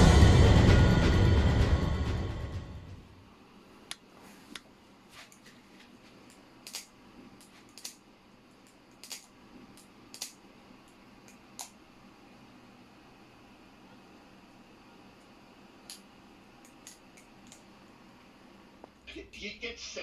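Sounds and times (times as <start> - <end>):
music: 0.0 - 3.2.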